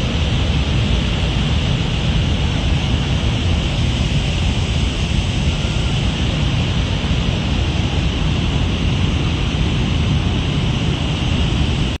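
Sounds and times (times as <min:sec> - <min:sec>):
deep rumble of churning water: 0:00.0 - 0:12.0
rushing mountain stream: 0:00.0 - 0:12.0.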